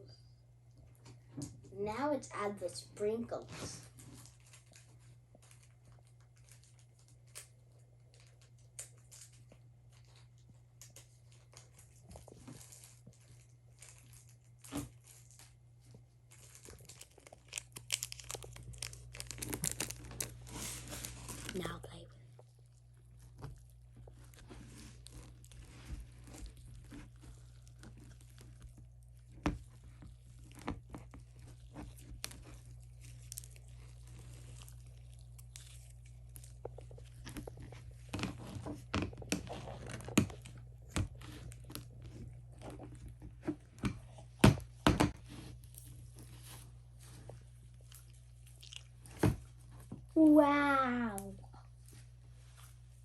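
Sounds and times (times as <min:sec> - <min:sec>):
slime crackling and popping: 0:04.0 - 0:46.3.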